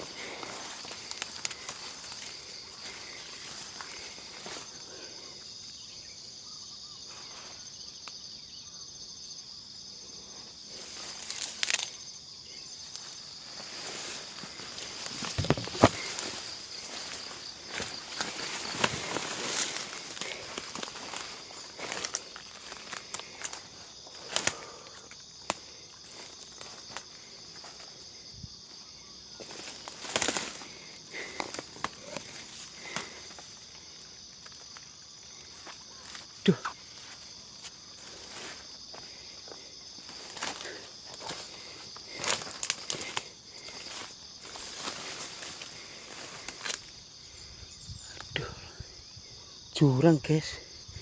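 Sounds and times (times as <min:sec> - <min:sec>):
rustle in undergrowth: 0:00.0 - 0:05.7, 0:10.0 - 0:48.3
insects trilling: 0:00.0 - 0:51.0
brushing through vegetation: 0:10.7 - 0:12.0, 0:12.8 - 0:24.6, 0:29.3 - 0:33.5.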